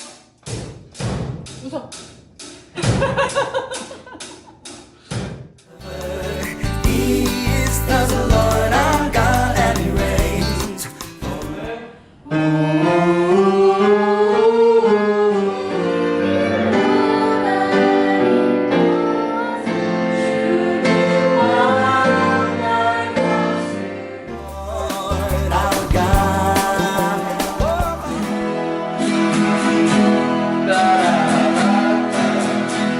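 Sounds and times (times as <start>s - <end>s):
person singing: 5.7s - 23.6s, 24.3s - 32.9s
band music with strong bass: 5.8s - 11.7s, 24.3s - 28.6s.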